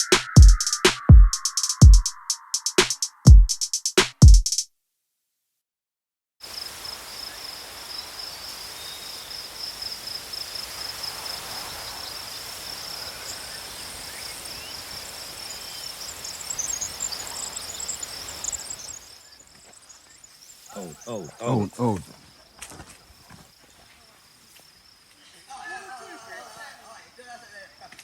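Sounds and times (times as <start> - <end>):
sharp insect chirps: 0.0 - 3.2, 6.5 - 21.4
faint outdoor hiss: 6.4 - 28.0
insect chorus trilling: 6.4 - 28.0.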